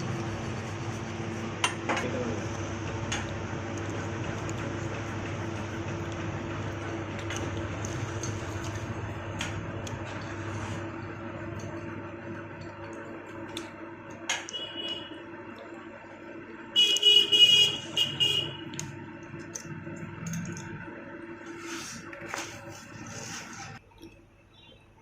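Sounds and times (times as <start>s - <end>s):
mechanical drone: 0.0s - 13.1s, 16.8s - 22.1s
vehicle horn honking: 14.5s - 15.3s, 16.8s - 18.7s.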